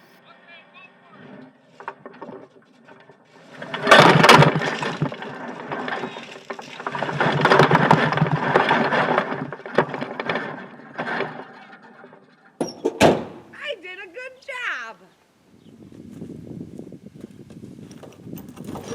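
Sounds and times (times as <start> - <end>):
shed cracking and crashing: 0.8 - 13.6.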